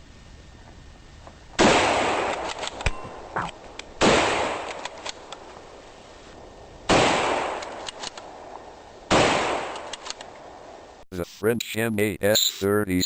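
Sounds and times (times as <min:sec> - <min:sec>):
rifle shots echoing: 0:01.6 - 0:02.9, 0:04.0 - 0:05.3, 0:06.9 - 0:08.5, 0:09.1 - 0:10.0
rifle bolt clicks: 0:07.6 - 0:08.3, 0:09.7 - 0:10.3.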